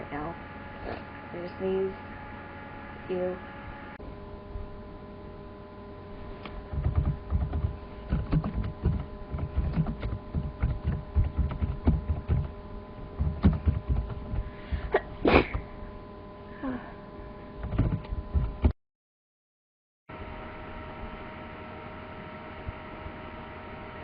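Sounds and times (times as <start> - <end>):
electrical hum: 0.0 - 18.8, 20.1 - 24.0
person sneezing: 14.8 - 15.6.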